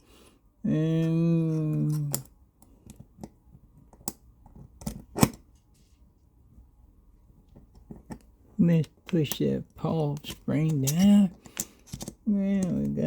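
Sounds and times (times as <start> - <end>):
small metal clicks and scrapes: 10.1 - 12.9.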